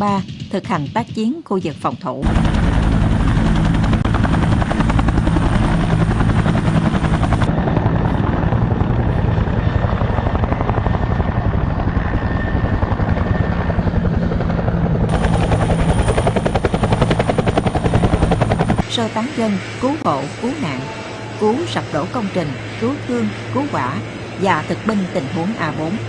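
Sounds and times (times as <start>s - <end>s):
helicopter engine drone: 0.0s - 26.0s
helicopter rotor chopping: 0.0s - 26.0s.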